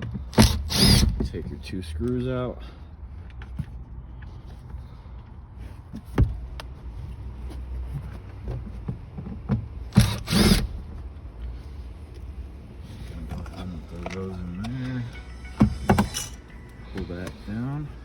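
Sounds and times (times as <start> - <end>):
low steady hum: 10.3 - 18.0.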